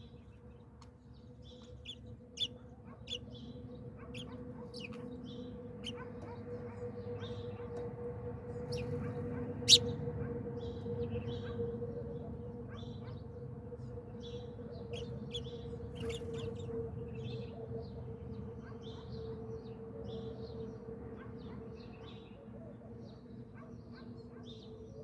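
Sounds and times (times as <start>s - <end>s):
small birds chirping: 1.4s - 7.4s, 8.5s - 10.0s, 14.2s - 17.4s.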